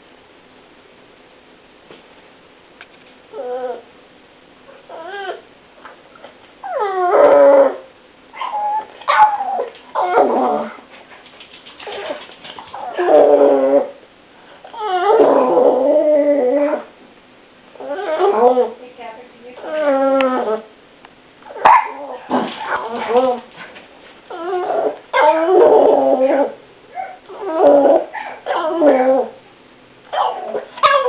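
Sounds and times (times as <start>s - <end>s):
dog whining: 3.3s - 3.9s, 4.7s - 5.5s, 6.2s - 10.9s, 11.6s - 14.0s, 14.6s - 17.0s, 17.7s - 18.8s, 19.6s - 20.7s, 21.4s - 23.6s, 24.3s - 29.5s, 30.1s - 31.0s.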